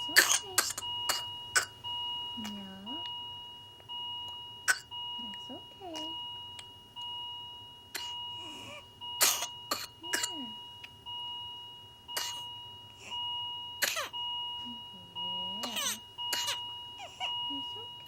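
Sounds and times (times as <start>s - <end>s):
child coughing: 0.0s - 1.8s, 4.6s - 4.9s, 7.9s - 10.5s, 12.2s - 12.5s, 13.8s - 14.2s, 15.6s - 17.4s.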